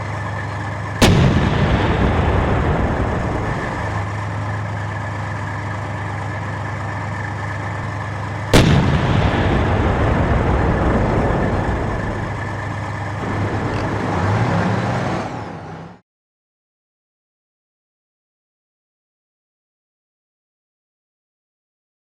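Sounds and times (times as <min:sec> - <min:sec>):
tank engine droning: 0:00.0 - 0:16.0
tank gun shot: 0:01.0 - 0:04.4, 0:08.5 - 0:13.2.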